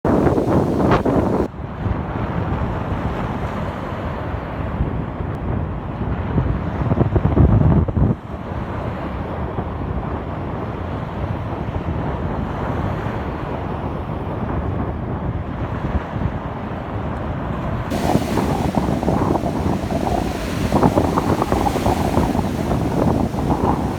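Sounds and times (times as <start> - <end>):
wind buffeting microphone: 0.0 - 1.5, 17.9 - 23.9.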